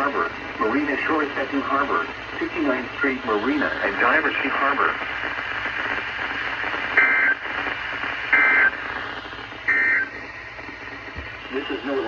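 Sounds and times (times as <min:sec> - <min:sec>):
radio static: 0:00.0 - 0:12.0.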